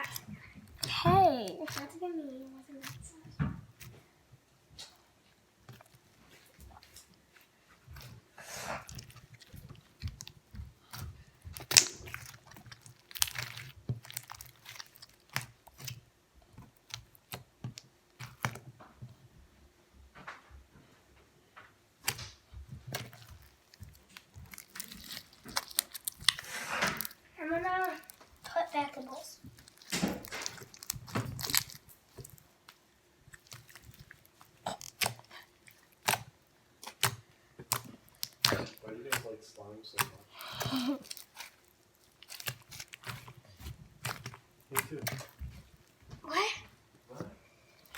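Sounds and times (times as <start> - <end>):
slime crackling and squishing: 0.0 - 4.1, 4.7 - 19.1, 22.0 - 47.9.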